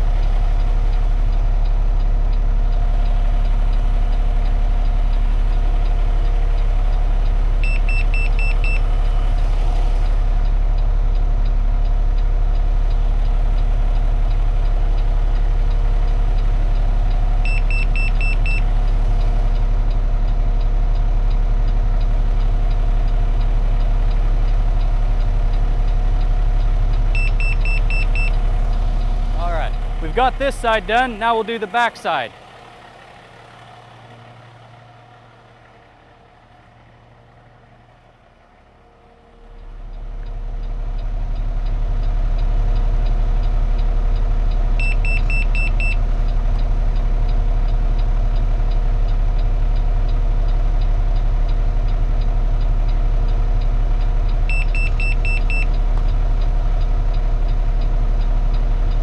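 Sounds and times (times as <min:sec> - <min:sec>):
diesel engine idling: 0:00.0 - 0:59.0
short high beeps: 0:27.2 - 0:28.4.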